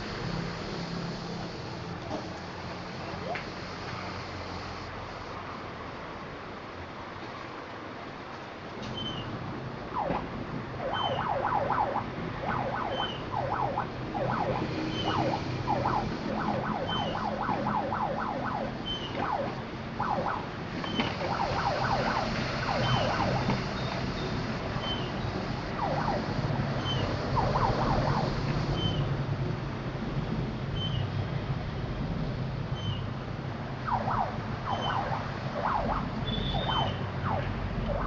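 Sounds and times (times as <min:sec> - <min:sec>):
low engine rumble: 0:00.0 - 0:38.0
faint high chirp: 0:09.0 - 0:09.3, 0:12.9 - 0:13.2, 0:23.8 - 0:25.2, 0:36.2 - 0:37.0
siren-like horn chirps: 0:10.8 - 0:29.1, 0:33.9 - 0:38.0.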